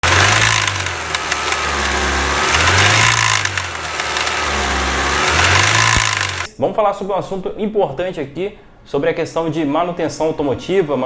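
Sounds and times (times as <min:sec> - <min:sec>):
car engine running: 0:00.0 - 0:06.5
whine rising and dipping in pitch: 0:01.2 - 0:06.5.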